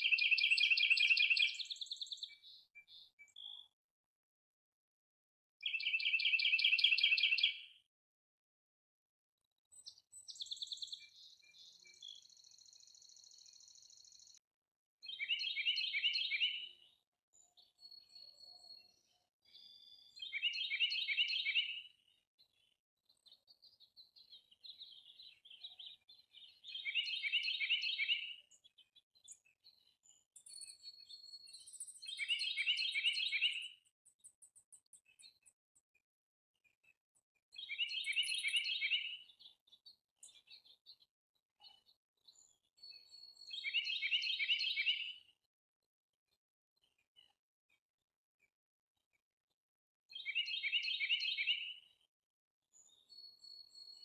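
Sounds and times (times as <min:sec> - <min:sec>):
birds chirping and trilling: 0:00.0 - 0:03.6, 0:05.6 - 0:07.7, 0:15.0 - 0:35.6, 0:37.5 - 0:41.0, 0:41.7 - 0:45.4.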